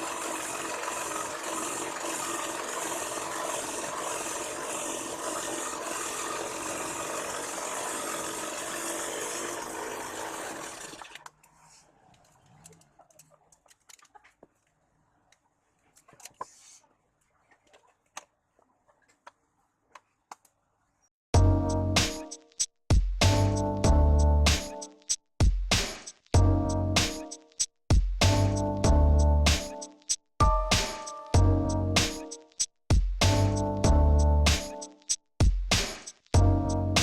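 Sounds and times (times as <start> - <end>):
band saw motor hum: 0.0 - 11.0.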